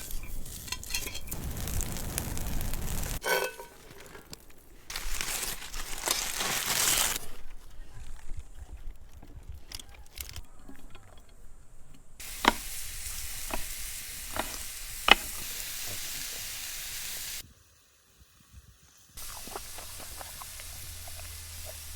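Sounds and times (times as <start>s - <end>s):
food sizzling on a grill: 0.0s - 4.2s, 12.2s - 21.9s
sharp pops: 12.2s - 16.4s.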